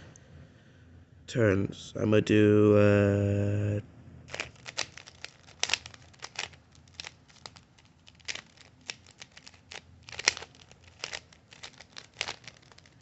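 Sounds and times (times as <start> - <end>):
plastic cube layers clicking: 4.3 - 13.0.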